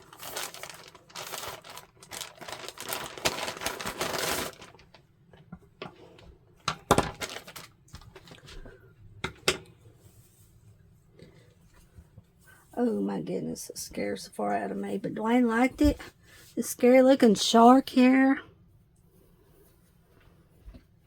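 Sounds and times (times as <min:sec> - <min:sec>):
plastic packaging crinkling: 0:00.0 - 0:05.1, 0:06.7 - 0:08.7.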